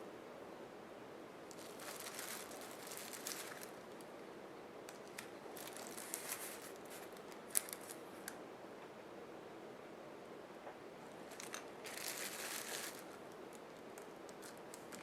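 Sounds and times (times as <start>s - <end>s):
craft pieces crinkling and rustling: 1.5s - 4.1s, 4.9s - 8.1s, 11.1s - 15.0s.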